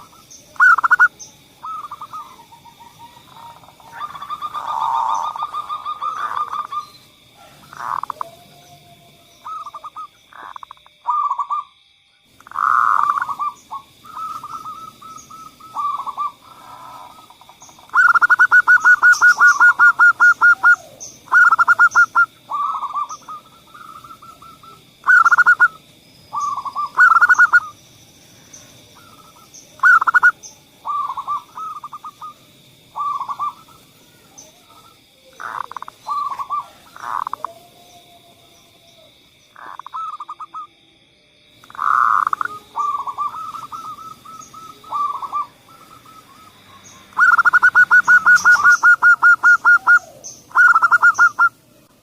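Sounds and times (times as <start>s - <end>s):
doves trilling coos: 0.0s - 40.8s, 41.6s - 52.0s.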